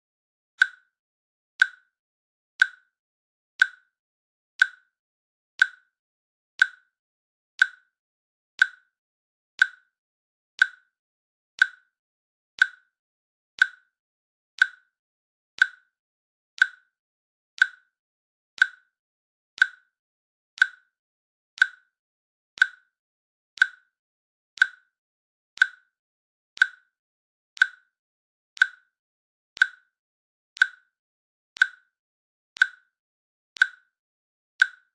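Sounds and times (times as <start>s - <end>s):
timer clicks: 0.6s - 1.0s, 1.6s - 2.0s, 2.6s - 3.0s, 3.6s - 4.0s, 4.6s - 5.0s, 5.6s - 6.0s, 6.6s - 7.0s, 7.6s - 8.0s, 8.6s - 9.0s, 9.6s - 10.0s, 10.6s - 11.0s, 11.6s - 12.0s, 12.6s - 13.0s, 13.6s - 14.0s, 14.6s - 15.0s, 15.6s - 16.0s, 16.6s - 17.0s, 17.6s - 18.0s, 18.6s - 19.0s, 19.6s - 20.0s, 20.6s - 21.0s, 21.6s - 22.0s, 22.6s - 23.0s, 23.6s - 24.0s, 24.6s - 25.0s, 25.6s - 26.0s, 26.6s - 27.0s, 27.6s - 28.0s, 28.6s - 29.0s, 29.6s - 30.0s, 30.6s - 31.0s, 31.6s - 32.0s, 32.6s - 33.0s, 33.6s - 34.0s, 34.6s - 34.9s.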